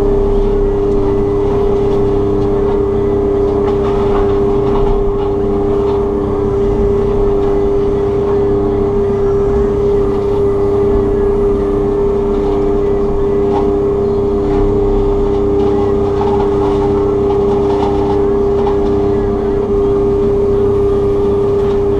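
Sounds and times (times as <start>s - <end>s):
excavator mulcher droning: 0.0s - 21.9s
two-note machine whine: 0.0s - 21.9s.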